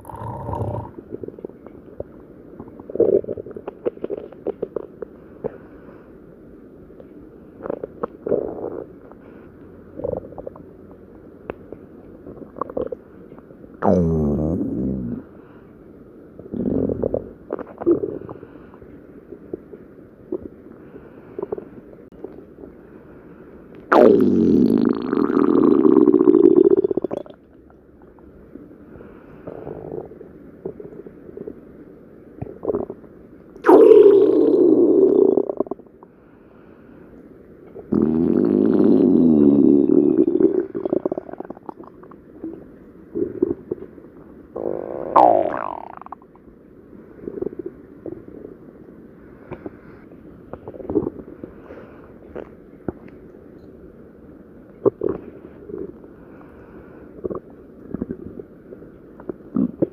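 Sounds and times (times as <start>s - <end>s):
stomach growling: 0.0s - 5.6s, 7.6s - 9.2s, 10.0s - 10.7s, 12.2s - 15.3s, 16.5s - 18.5s, 23.9s - 28.3s, 32.4s - 36.0s, 37.7s - 44.0s, 44.6s - 46.4s, 47.2s - 48.3s, 50.5s - 51.4s, 54.8s - 56.0s, 57.2s - 59.9s
stomach gurgles: 0.0s - 5.6s, 7.6s - 9.2s, 9.9s - 15.2s, 16.4s - 18.7s, 19.3s - 20.7s, 21.3s - 22.8s, 23.9s - 28.3s, 29.4s - 31.7s, 32.4s - 36.1s, 37.6s - 46.5s, 47.2s - 48.7s, 50.4s - 51.6s, 52.3s - 53.3s, 54.8s - 56.1s, 57.2s - 59.9s.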